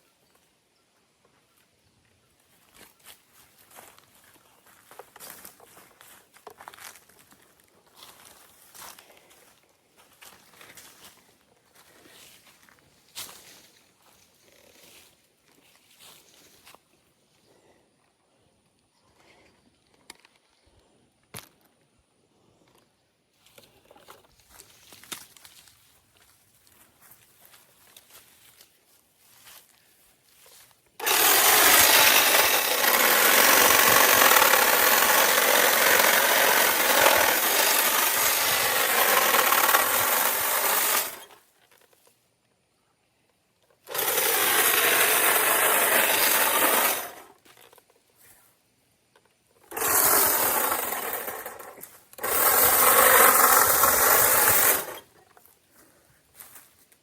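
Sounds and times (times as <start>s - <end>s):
power saw cutting branches: 31.0s - 41.4s, 43.8s - 47.4s, 49.6s - 55.2s.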